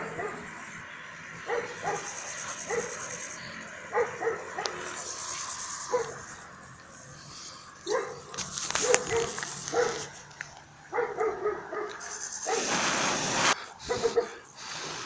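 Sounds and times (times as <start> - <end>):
dog yelping and barking: 0.0 - 0.6, 1.5 - 3.2, 3.9 - 4.9, 5.8 - 6.3, 7.9 - 10.2, 10.9 - 12.6, 13.9 - 14.4.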